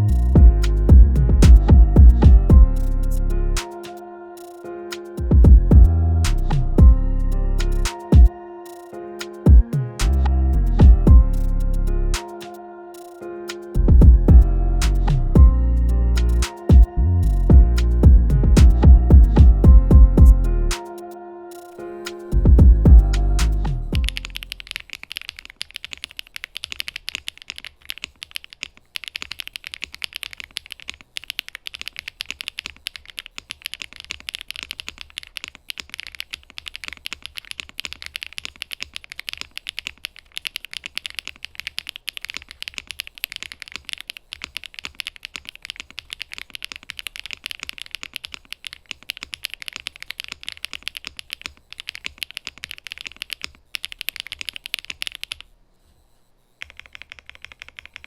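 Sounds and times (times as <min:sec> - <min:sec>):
fast typing on mechanical keyboard: 0:24.0 - 0:55.5, 0:56.6 - 0:58.0.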